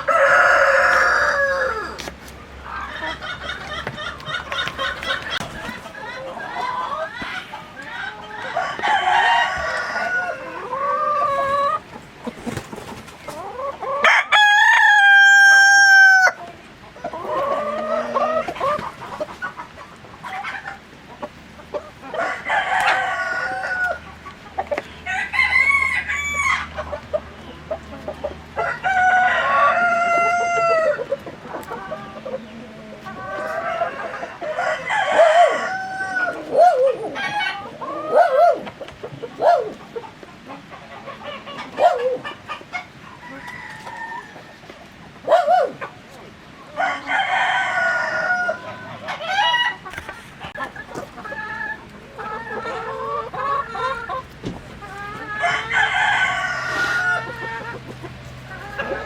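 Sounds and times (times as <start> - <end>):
rooster crowing: 0.0 - 2.0, 8.5 - 10.8, 14.0 - 16.4, 22.2 - 24.0, 25.1 - 26.7, 33.4 - 36.4, 46.8 - 48.8, 55.3 - 57.5
chickens clucking: 0.0 - 59.0.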